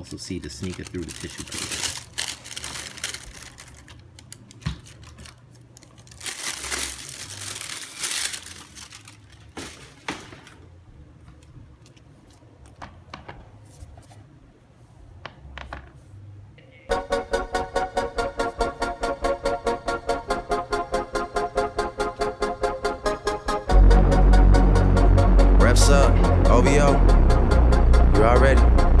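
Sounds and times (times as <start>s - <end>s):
tissue paper crinkling: 0.0s - 10.5s
music with steady beat: 16.9s - 29.0s.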